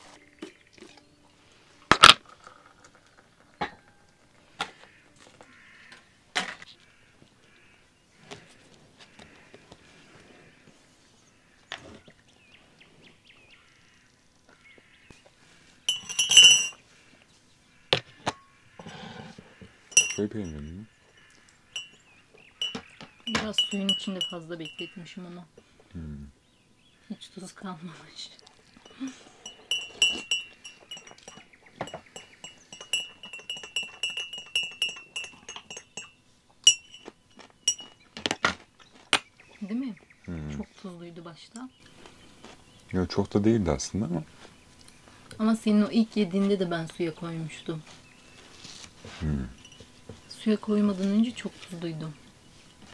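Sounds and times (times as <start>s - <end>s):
steady ringing tone: 15.9s - 16.8s, 19.9s - 25.1s, 28.8s - 38.2s, 49.6s - 50.6s
tableware clinking and knocking: 15.9s - 16.8s, 19.9s - 20.8s, 21.8s - 22.0s, 22.6s - 25.0s, 28.8s - 38.6s
faint bird chirps: 28.7s - 36.2s.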